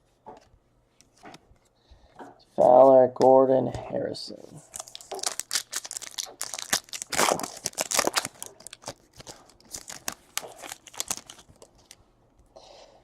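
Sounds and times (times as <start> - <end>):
cards flicking and rustling: 4.6 - 12.0.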